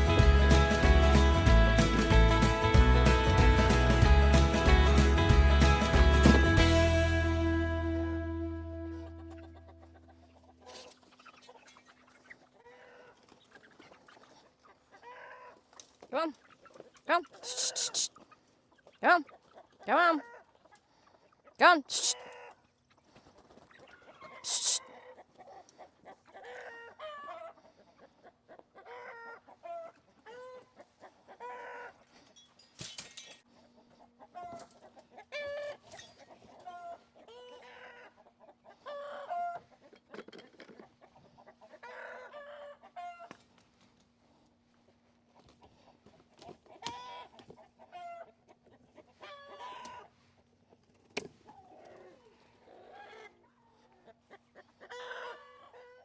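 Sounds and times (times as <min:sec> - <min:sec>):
chickens clucking: 0:08.9 - 0:32.4, 0:33.5 - 0:43.6, 0:44.9 - 0:56.0.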